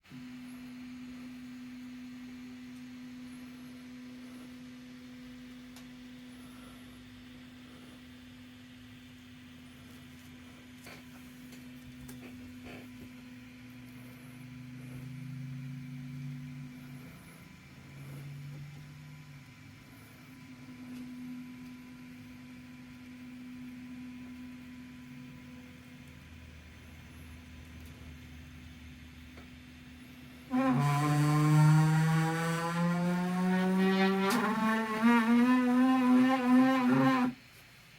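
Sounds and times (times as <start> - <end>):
stepper motor hum: 10.4 - 37.4
stepper motor humming: 28.0 - 37.4.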